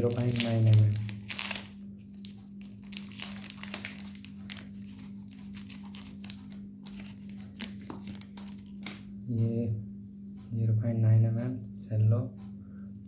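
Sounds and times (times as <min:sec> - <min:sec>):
crinkling: 0:00.0 - 0:09.1
low electrical hum: 0:00.0 - 0:13.0
small clicks of objects handled: 0:03.1 - 0:09.0.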